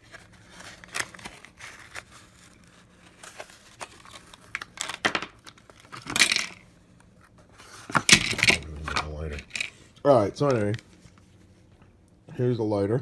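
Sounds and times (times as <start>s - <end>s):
packaging crinkling and tearing: 0.0s - 6.2s.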